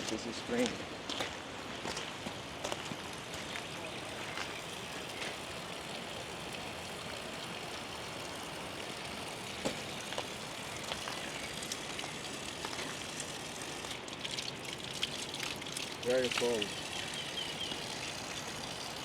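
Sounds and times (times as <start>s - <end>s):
footsteps crunching on a path: 0.0s - 5.5s, 9.5s - 13.6s
mountain stream rushing: 0.0s - 19.0s.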